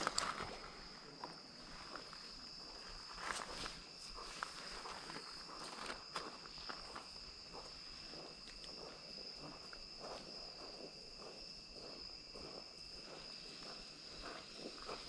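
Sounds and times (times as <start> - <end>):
insect chorus: 0.0 - 15.0
soft rustling and shuffling: 1.6 - 10.9.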